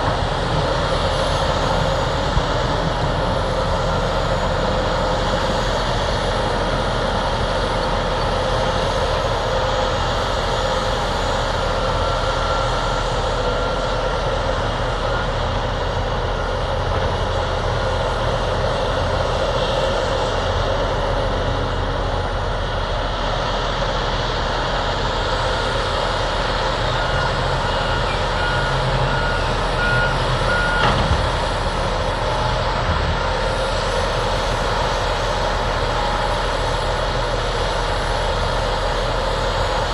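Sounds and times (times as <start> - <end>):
diesel earthmoving machinery: 0.0 - 39.9
reversing alarm beeping: 10.2 - 16.0, 26.5 - 32.6.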